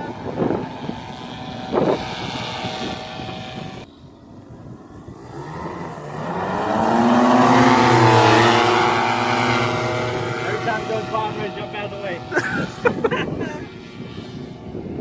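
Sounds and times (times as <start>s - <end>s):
paramotor engine and propeller droning: 0.0s - 15.0s.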